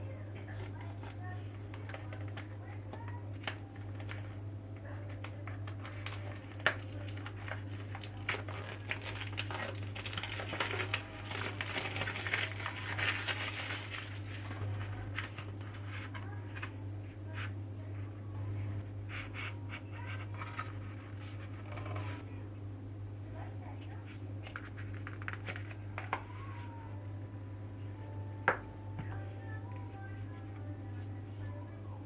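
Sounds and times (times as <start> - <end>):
steady low hum: 0.0 - 32.0
crinkling rustles: 5.1 - 16.7.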